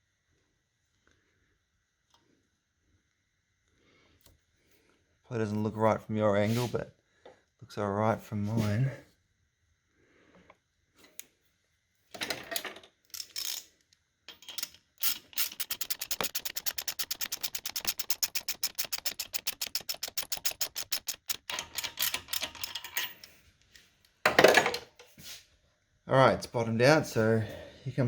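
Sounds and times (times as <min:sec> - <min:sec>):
ratchet wrench clicking: 0:14.3 - 0:23.3.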